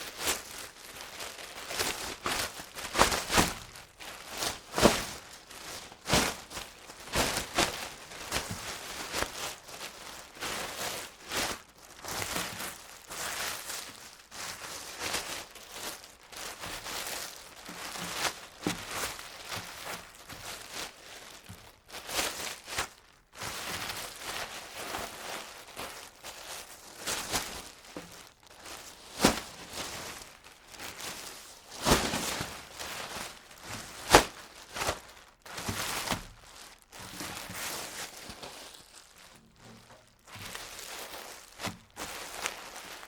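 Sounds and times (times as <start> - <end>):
plastic bag crinkling and rustling: 0.0 - 43.0.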